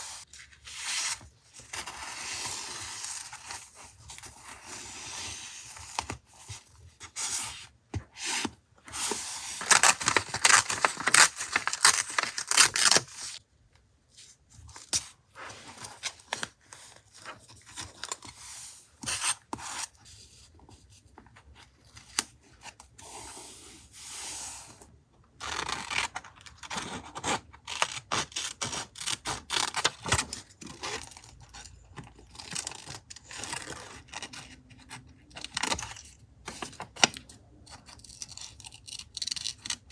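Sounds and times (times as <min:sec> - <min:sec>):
paper tearing and rustling: 0:09.0 - 0:13.4.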